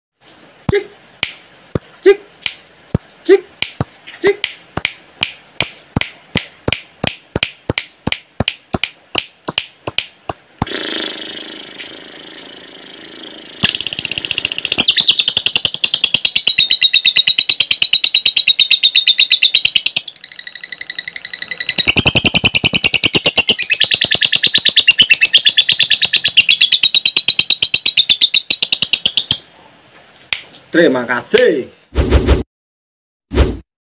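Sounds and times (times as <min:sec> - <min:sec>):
sharp bird ticks: 0:00.7 - 0:10.7, 0:13.6 - 0:29.4
bird chattering trills: 0:10.6 - 0:29.5.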